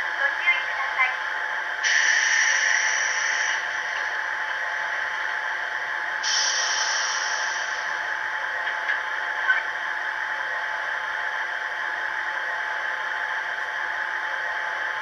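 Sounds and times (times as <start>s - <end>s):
steady noisy hum: 0.0s - 15.0s
air hissing: 1.8s - 4.0s, 6.2s - 8.0s.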